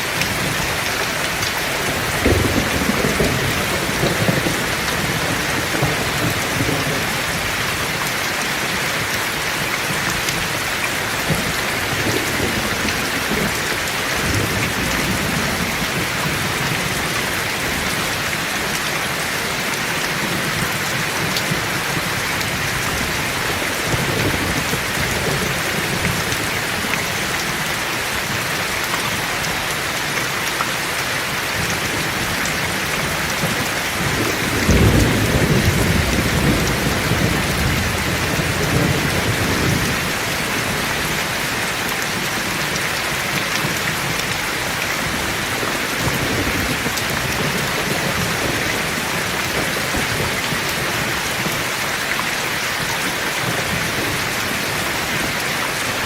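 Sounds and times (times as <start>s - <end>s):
heavy rain: 0.0s - 56.0s
thunder rumble: 0.2s - 7.8s, 32.0s - 41.4s.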